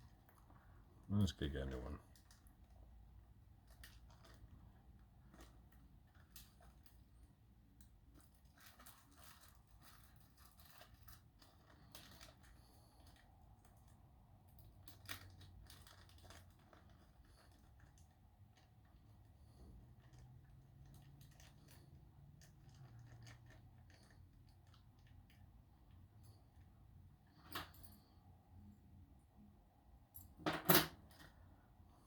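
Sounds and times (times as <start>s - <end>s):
plastic bag rustling: 8.2s - 13.2s, 14.7s - 20.2s.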